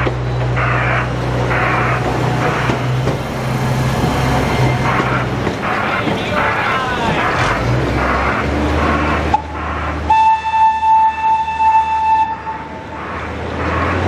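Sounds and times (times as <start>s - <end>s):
low engine rumble: 0.0s - 10.2s
locomotive whistle: 4.1s - 13.3s
crowd murmur: 4.8s - 9.3s.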